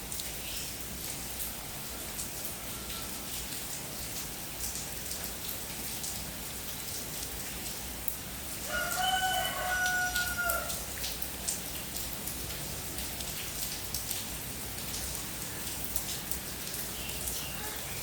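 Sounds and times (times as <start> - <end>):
steady rain with drop ticks: 0.0 - 18.0
rooster crowing: 8.6 - 10.8.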